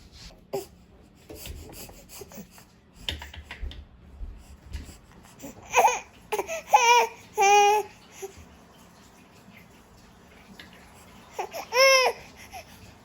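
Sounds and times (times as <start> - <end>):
light clicks and taps: 3.0 - 5.3.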